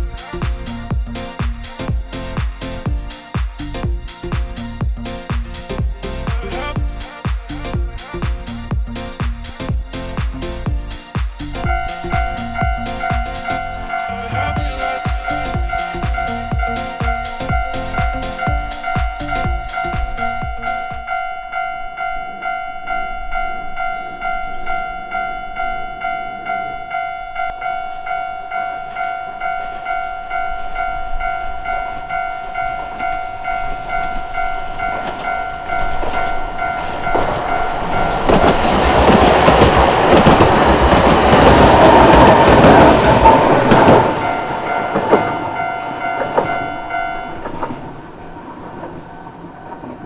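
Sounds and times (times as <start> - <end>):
electric train passing: 0.0 - 50.0
level crossing bell ringing: 11.6 - 40.4, 43.9 - 47.5.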